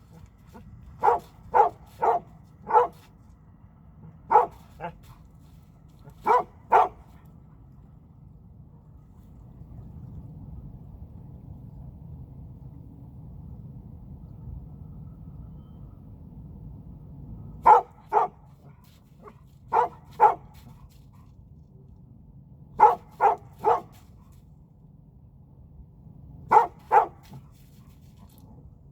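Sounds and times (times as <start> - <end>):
low steady rumble: 0.0 - 28.9
dog barking: 1.0 - 3.0, 4.3 - 5.0, 6.2 - 7.0, 17.6 - 18.4, 19.7 - 20.5, 22.8 - 24.0, 26.5 - 27.4.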